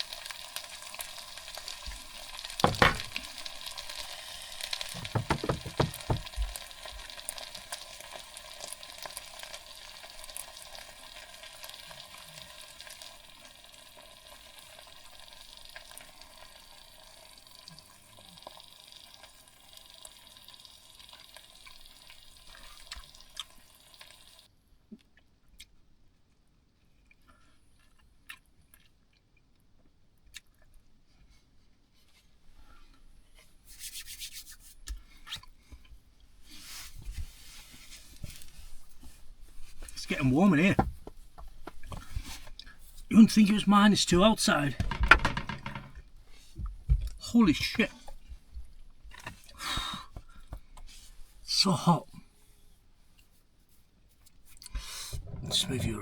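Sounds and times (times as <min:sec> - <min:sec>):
food sizzling in a pan: 0:00.0 - 0:05.2, 0:06.5 - 0:24.5.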